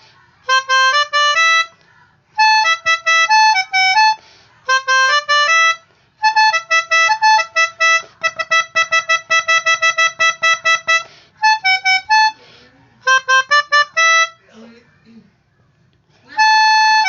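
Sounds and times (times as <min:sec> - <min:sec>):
musical horn with reedy notes: 0:00.5 - 0:01.8, 0:02.4 - 0:12.4, 0:13.0 - 0:14.4, 0:16.3 - 0:17.0.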